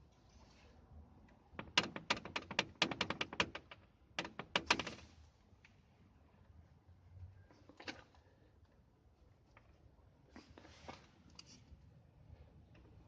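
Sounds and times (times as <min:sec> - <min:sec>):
rapid rattling knocks: 0:01.6 - 0:05.1.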